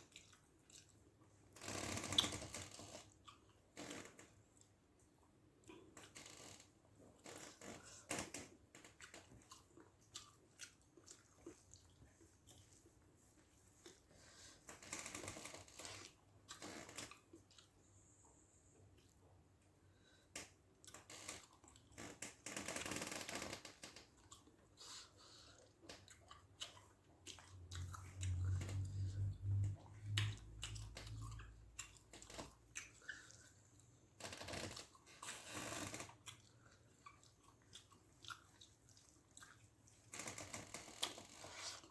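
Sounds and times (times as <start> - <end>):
wet chewing: 0.0 - 1.2, 8.4 - 14.1, 24.0 - 41.9
small clicks and rustles: 11.1 - 17.8, 20.3 - 24.2, 34.2 - 36.3, 39.0 - 41.9
low hum: 27.8 - 31.6.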